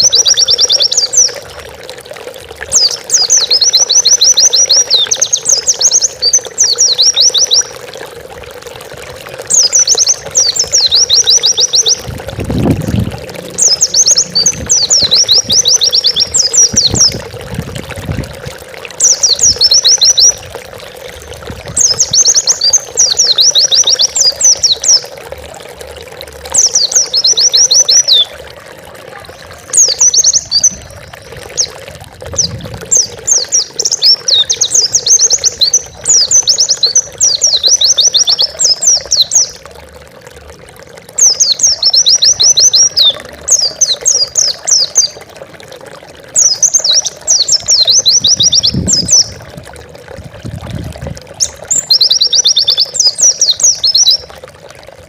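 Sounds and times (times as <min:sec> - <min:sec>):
bird singing high chattering notes: 0:00.0 - 0:01.4, 0:02.7 - 0:07.8, 0:09.5 - 0:12.1, 0:12.8 - 0:17.2, 0:19.0 - 0:20.4, 0:21.7 - 0:25.1, 0:26.5 - 0:28.4, 0:29.3 - 0:31.8, 0:32.4 - 0:39.6, 0:41.2 - 0:45.2, 0:46.4 - 0:49.4, 0:51.4 - 0:54.3.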